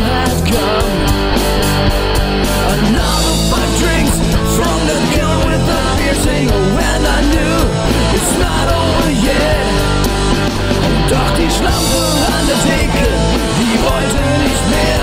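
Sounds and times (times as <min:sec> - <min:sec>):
punk rock band with singing: 0:00.0 - 0:15.0.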